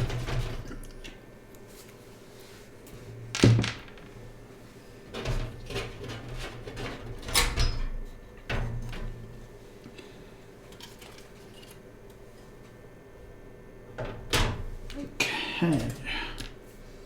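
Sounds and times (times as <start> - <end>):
knocks and clatters in metal case: 3.4 - 4.0.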